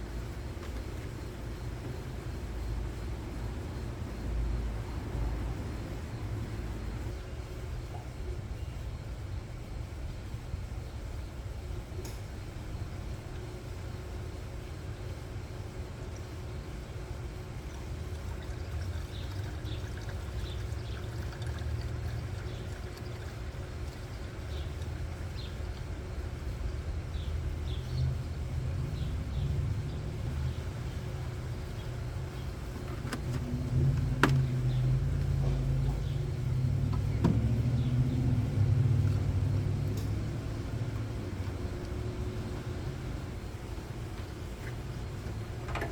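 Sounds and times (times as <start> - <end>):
car engine and road rumble: 24.4 - 45.9.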